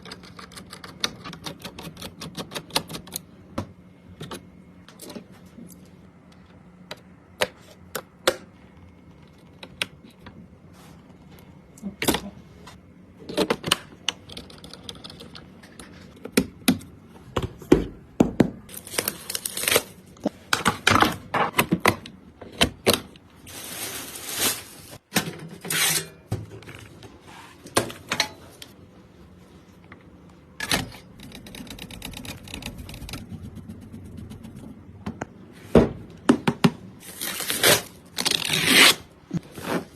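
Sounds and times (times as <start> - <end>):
packaging rustling: 23.4 - 25.1
computer parts clicking and knocking: 30.6 - 33.4.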